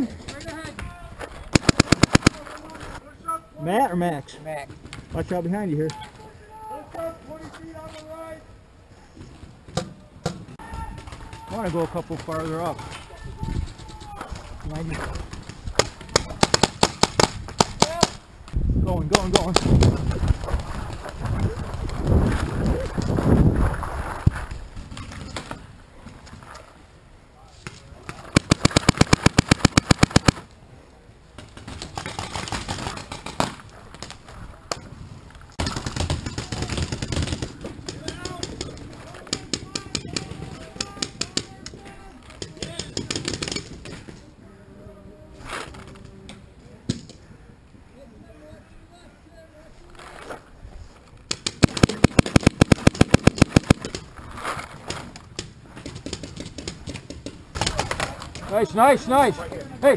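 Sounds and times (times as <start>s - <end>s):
paintball marker rapid firing: 1.5s - 2.4s, 15.4s - 18.2s, 28.3s - 30.4s, 35.6s - 38.7s, 42.6s - 43.7s, 51.3s - 54.1s
faint scattered shots: 1.5s - 2.5s, 28.1s - 30.5s, 51.3s - 54.0s
rustling movement: 49.7s - 59.9s.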